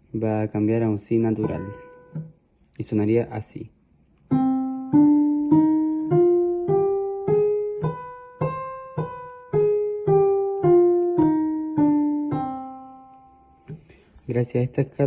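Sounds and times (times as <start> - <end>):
piano playing a scale: 1.2 - 2.4, 4.3 - 13.8.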